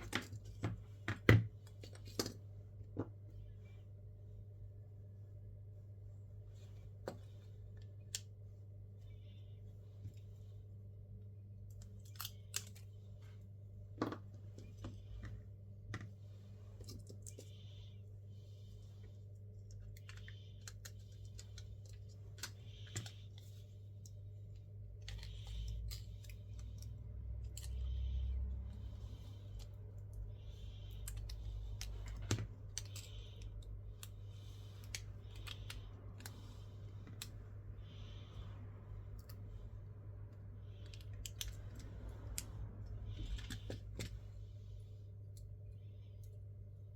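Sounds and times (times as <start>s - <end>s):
steady low hum: 0.0s - 46.9s
tools clicking and scraping on phone: 19.3s - 39.5s, 40.4s - 44.3s
hand tools clicking on phone parts: 30.8s - 37.4s, 40.8s - 44.2s.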